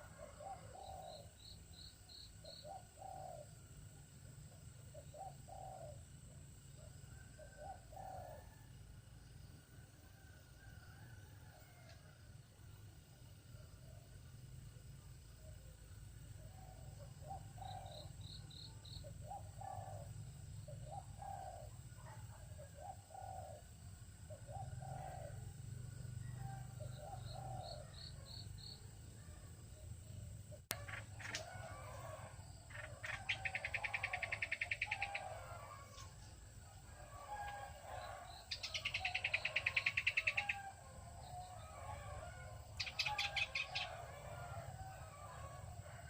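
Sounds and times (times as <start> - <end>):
bird trills: 30.7 - 31.6, 42.8 - 44.0
birds calling: 30.7 - 36.1, 41.3 - 44.5.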